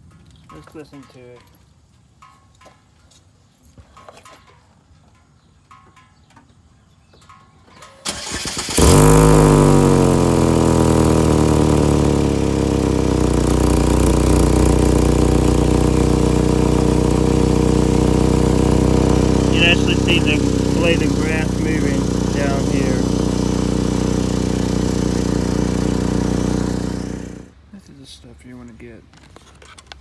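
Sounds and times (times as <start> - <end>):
car engine starting and idling: 8.0 - 27.5
exhaust hissing: 8.1 - 27.5.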